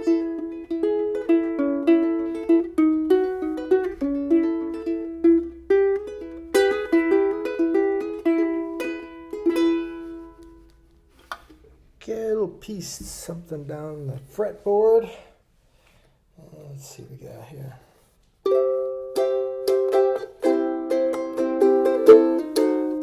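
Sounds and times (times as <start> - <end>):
ukulele plucked melody: 0.0 - 12.0, 18.4 - 23.0.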